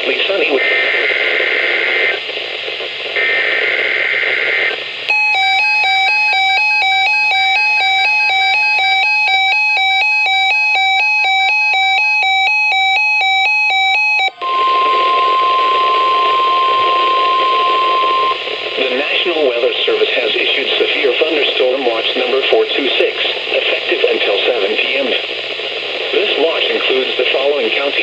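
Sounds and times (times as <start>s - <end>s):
radio static: 0.0s - 5.1s, 14.3s - 28.0s
two-tone warbling alarm beeps: 5.1s - 19.4s
data header tones: 5.1s - 21.4s
steady alert tone: 14.2s - 19.3s.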